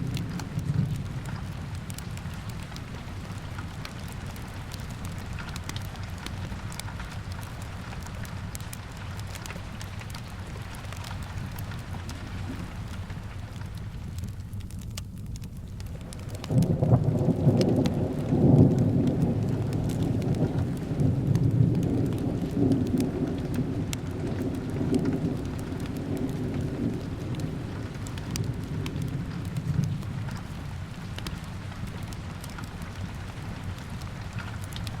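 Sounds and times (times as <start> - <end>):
thunder rumbling: 0.0 - 5.3, 16.0 - 35.0
steady rain: 0.0 - 35.0.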